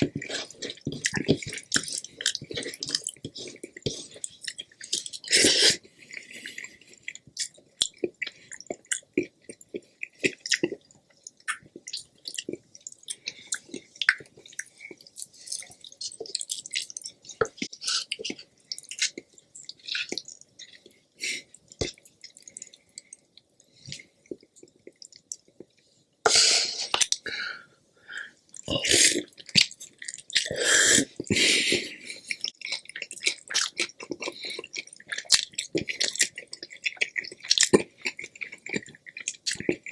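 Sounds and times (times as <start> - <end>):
person chewing food: 0.0 - 27.6, 28.3 - 39.9.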